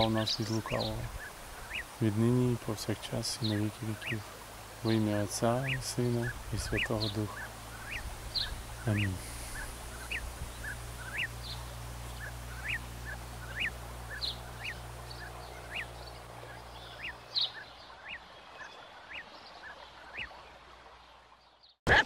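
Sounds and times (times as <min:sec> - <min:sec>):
low steady hum: 0:00.0 - 0:21.0
birds chirping: 0:00.0 - 0:21.8.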